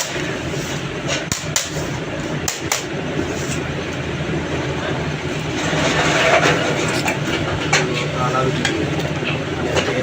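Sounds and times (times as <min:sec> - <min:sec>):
low mechanical rumble: 0:00.0 - 0:10.0.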